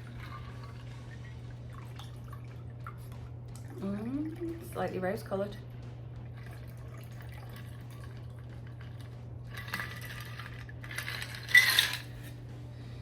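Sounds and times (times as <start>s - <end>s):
liquid pouring into a glass: 0.0s - 4.7s, 6.2s - 10.8s
steady low hum: 0.0s - 13.0s.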